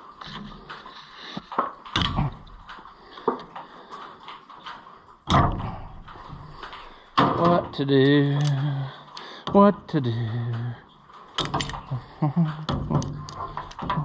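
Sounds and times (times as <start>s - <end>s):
clicks and knocks on chain: 10.9s - 14.0s.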